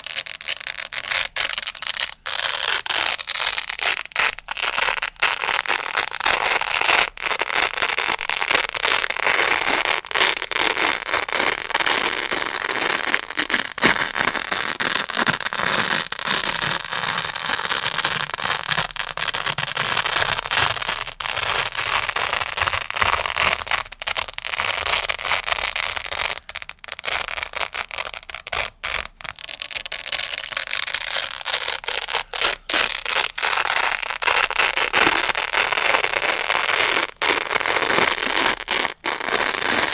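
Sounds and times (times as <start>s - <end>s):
velcro ripping: 0.0s - 39.9s.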